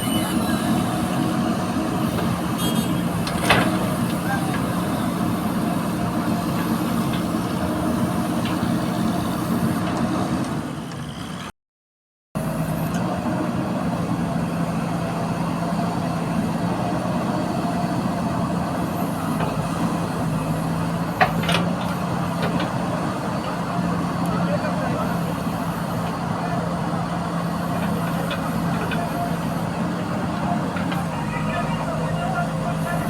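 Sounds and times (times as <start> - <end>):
diesel engine running: 0.0 - 11.5, 12.4 - 33.0.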